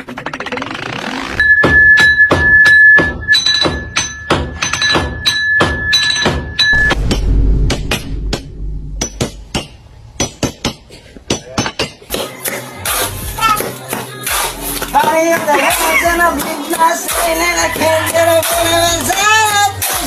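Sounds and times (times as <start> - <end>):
steady high-pitched tone: 3.3 - 10.4.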